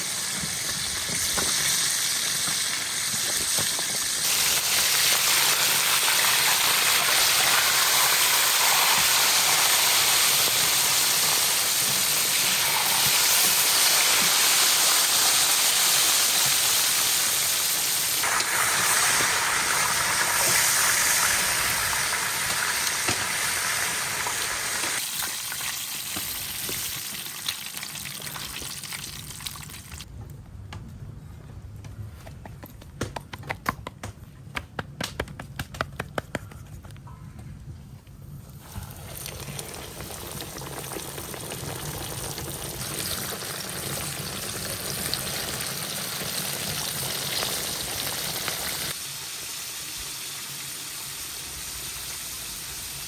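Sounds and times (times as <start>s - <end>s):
food sizzling in hot oil: 0.0s - 30.1s.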